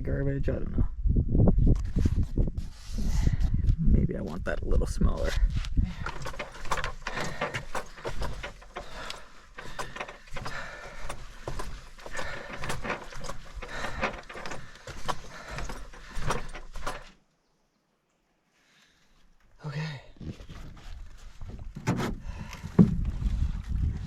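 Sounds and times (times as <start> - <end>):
rustling of camping gear: 5.2 - 17.3, 18.4 - 24.0
small knocks and clicks: 5.9 - 17.2.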